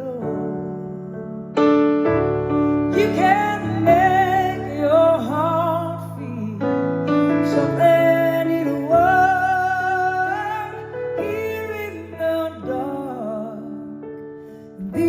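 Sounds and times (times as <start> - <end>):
piano chords: 0.0 - 15.0
woman singing a ballad: 2.9 - 6.9, 7.5 - 13.8, 14.8 - 15.0.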